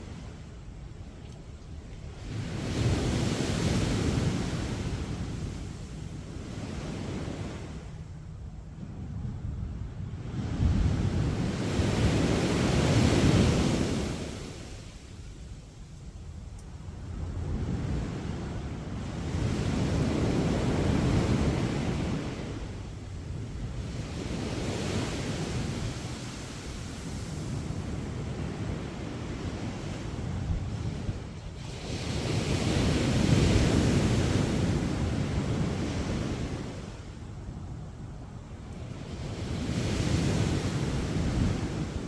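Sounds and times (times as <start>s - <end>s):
wind rumble on microphone: 0.0s - 42.0s
sea waves breaking on beach: 23.9s - 37.2s.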